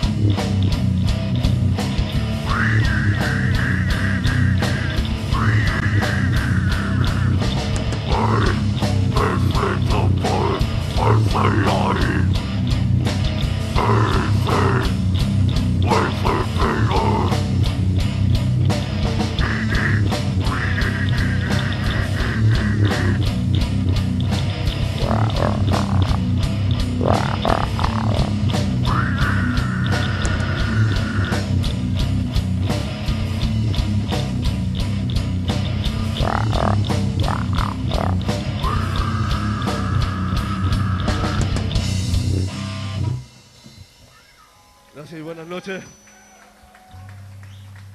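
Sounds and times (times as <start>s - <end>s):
distorted guitar and bass: 0.0s - 43.9s
harsh screamed vocals: 2.4s - 12.4s, 13.7s - 15.0s, 15.8s - 17.5s, 19.4s - 23.3s, 25.0s - 26.2s, 27.0s - 31.7s, 36.2s - 41.7s.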